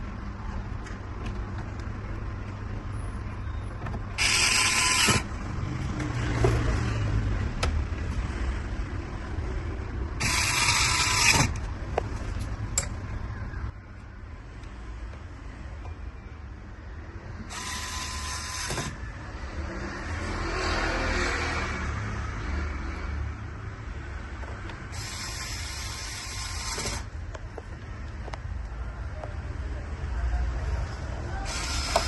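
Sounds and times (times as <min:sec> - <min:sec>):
screwdriver turning screws: 0:04.2 - 0:05.3, 0:10.2 - 0:11.6, 0:24.9 - 0:27.1, 0:31.5 - 0:32.0.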